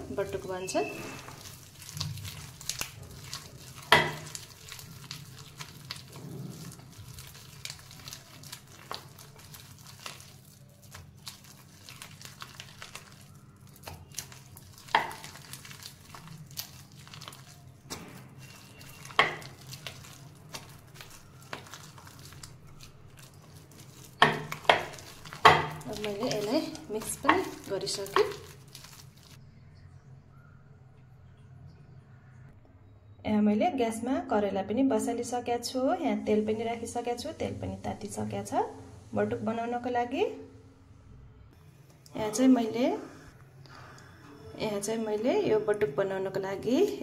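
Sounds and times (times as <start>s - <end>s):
batter mixed by hand: 0.0s - 29.4s.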